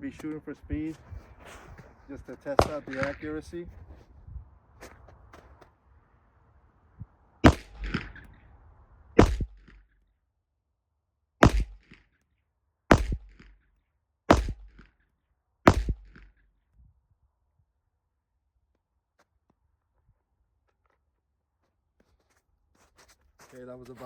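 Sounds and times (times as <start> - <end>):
pistol shots with echo: 2.5 - 3.4, 7.4 - 8.4, 9.2 - 9.7, 11.4 - 11.9, 12.9 - 13.4, 14.3 - 14.8, 15.7 - 16.2.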